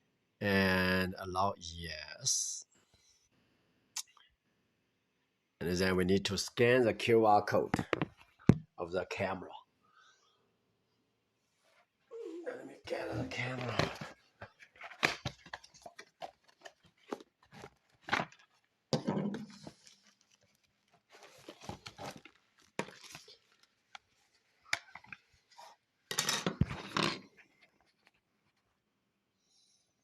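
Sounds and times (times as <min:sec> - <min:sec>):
rustling of objects moved: 0:12.9 - 0:28.7
objects clicking and knocking: 0:13.7 - 0:19.9.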